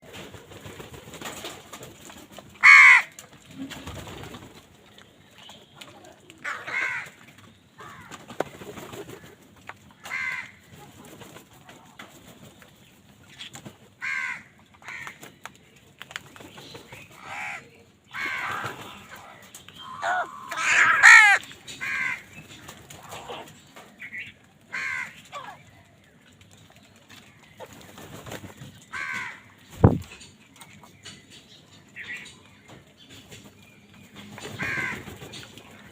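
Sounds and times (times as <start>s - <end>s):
crows cawing: 2.6s - 3.2s, 6.4s - 7.2s, 7.8s - 8.2s, 10.0s - 10.6s, 14.0s - 15.2s, 17.2s - 22.3s, 24.7s - 25.6s, 28.9s - 29.5s, 34.6s - 35.1s.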